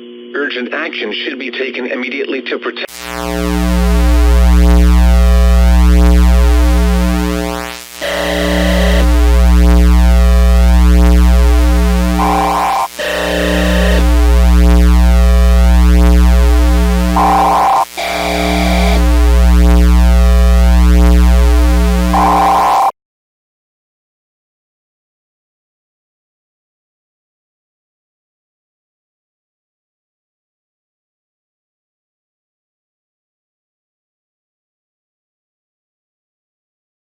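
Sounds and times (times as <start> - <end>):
bass drone: 2.9 - 22.9
electronic synthesizer loop: 2.9 - 22.9.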